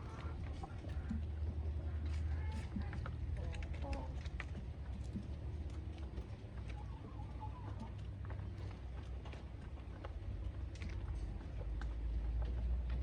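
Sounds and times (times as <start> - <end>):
chickens clucking softly: 0.0 - 9.2
chickens pecking taps: 0.0 - 13.0.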